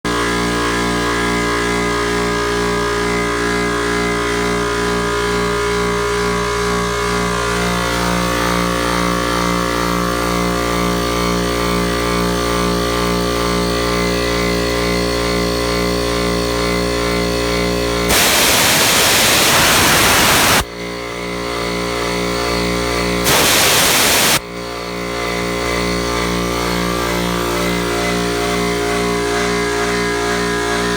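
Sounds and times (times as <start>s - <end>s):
compressed air hissing: 18.1s - 20.6s, 23.3s - 24.4s
air compressor running: 18.1s - 20.7s, 23.2s - 24.5s.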